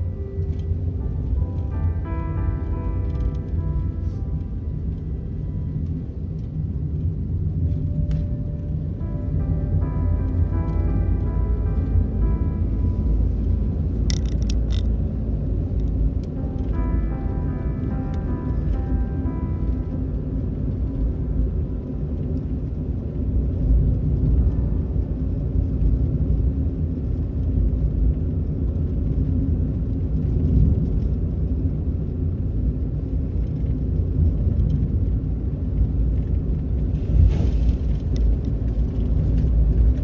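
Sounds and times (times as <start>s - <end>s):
car driving rumble: 0.0s - 40.0s.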